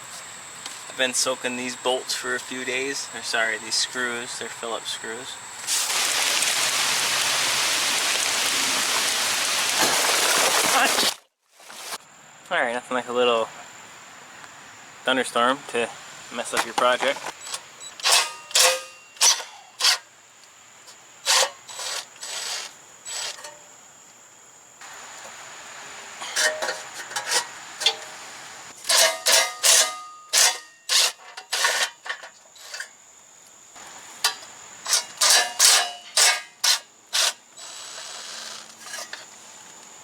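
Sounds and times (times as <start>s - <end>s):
steady hiss: 0.0s - 29.9s
hand tool rasping and clicking: 17.4s - 20.0s, 21.2s - 23.6s, 28.8s - 32.9s, 34.2s - 39.3s.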